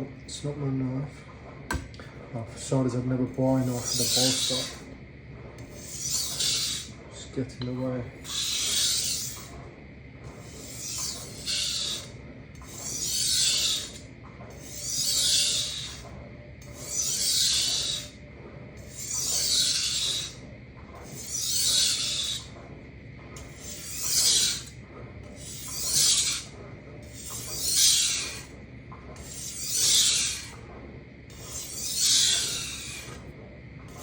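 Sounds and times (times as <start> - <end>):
knife scraping on whetstone: 3.5 - 4.9, 5.6 - 6.9, 7.6 - 9.5, 10.3 - 16.0, 16.6 - 18.2, 18.8 - 20.4, 21.0 - 22.5, 23.4 - 24.8, 25.4 - 28.5, 29.2 - 30.6, 31.3 - 33.2.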